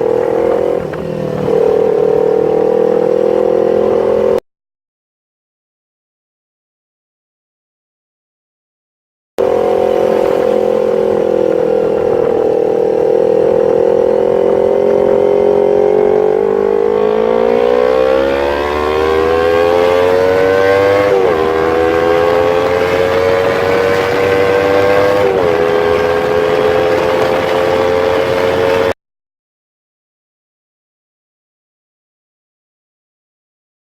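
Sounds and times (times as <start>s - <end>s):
motorcycle engine at high revs: 0.0s - 4.4s, 9.4s - 29.0s.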